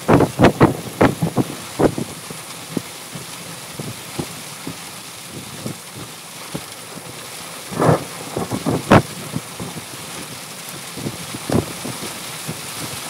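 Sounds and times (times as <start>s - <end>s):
heavy rain: 0.0s - 13.0s
loud low crackles: 7.6s - 9.7s.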